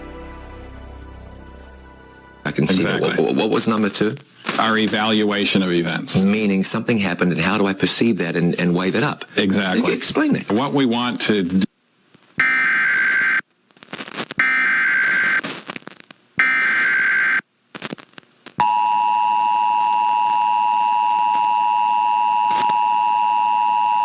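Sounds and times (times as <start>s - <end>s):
two-tone attention signal: 12.4s - 13.3s, 16.4s - 17.2s
harsh buzzing data bursts: 12.4s - 13.4s, 14.4s - 15.5s, 16.4s - 17.4s
crackle: 13.3s - 18.6s.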